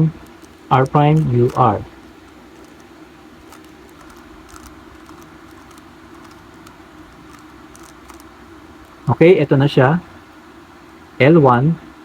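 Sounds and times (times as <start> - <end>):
puzzle cube plastic clicks: 0.0 - 9.1.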